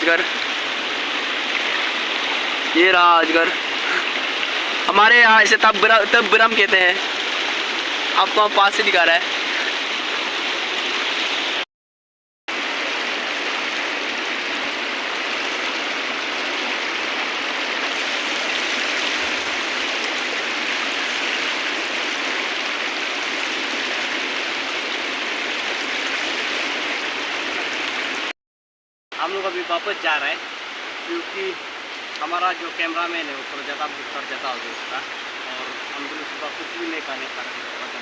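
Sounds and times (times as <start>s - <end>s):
river rushing: 0.0s - 11.6s, 12.5s - 28.3s, 29.2s - 38.0s.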